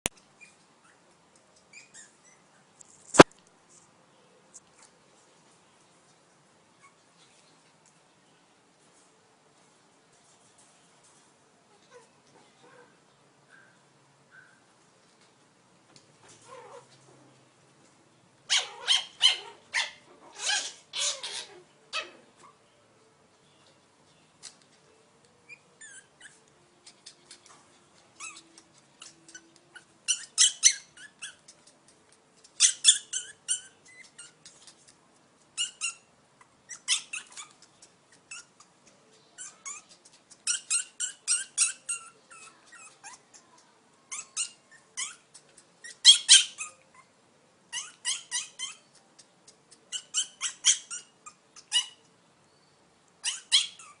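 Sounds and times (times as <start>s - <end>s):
small pets squeaking and chattering: 0.2s - 3.3s, 18.5s - 22.6s, 25.5s - 47.1s, 47.7s - 52.1s, 53.2s - 54.0s.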